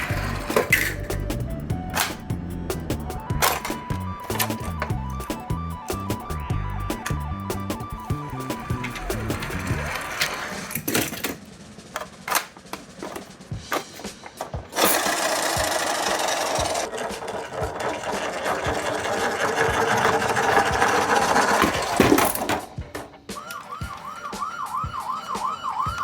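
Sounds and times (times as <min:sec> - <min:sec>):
toy vehicle rattling whir: 0:00.0 - 0:01.2, 0:14.4 - 0:22.7
toy vehicles clicking and clattering: 0:00.0 - 0:01.2, 0:03.4 - 0:04.9, 0:13.8 - 0:23.7.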